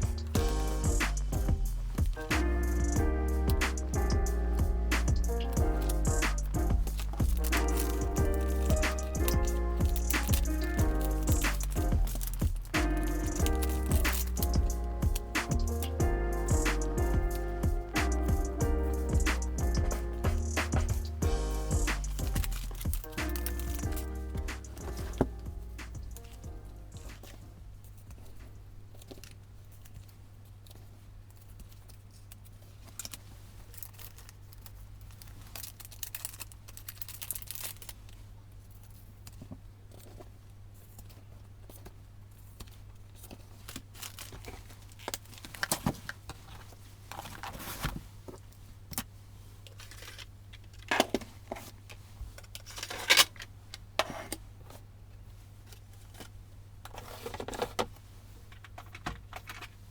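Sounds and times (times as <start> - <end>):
paper tearing and crinkling: 0.0 - 18.2, 18.9 - 27.4, 32.9 - 39.4
steady low hum: 0.0 - 27.8.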